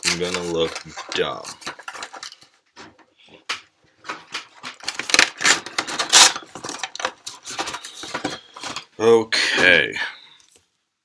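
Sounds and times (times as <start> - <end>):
card wrappers crinkling: 0.0 - 2.6, 4.0 - 9.0.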